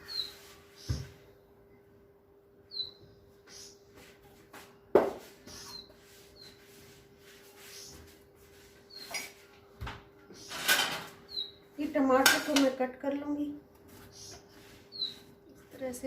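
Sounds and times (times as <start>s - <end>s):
small bird chirping: 0.0s - 1.2s, 2.6s - 3.9s, 5.4s - 6.7s, 7.6s - 8.1s, 8.9s - 9.4s, 11.3s - 11.8s, 14.0s - 15.9s.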